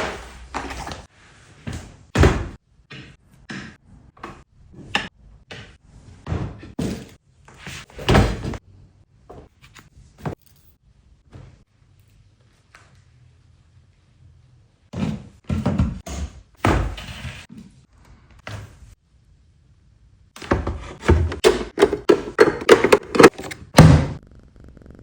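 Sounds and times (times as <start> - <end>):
household objects knocking and thudding: 14.9 - 17.2, 20.4 - 24.2.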